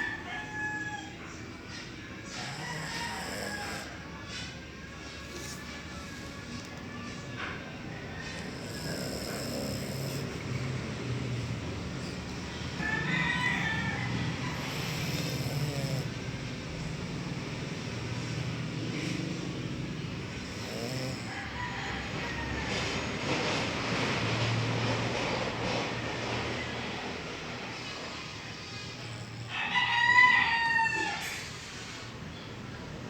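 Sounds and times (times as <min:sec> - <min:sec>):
dog snoring: 0:02.3 - 0:04.3, 0:05.2 - 0:06.3, 0:08.1 - 0:12.3, 0:14.3 - 0:16.3, 0:20.3 - 0:21.5.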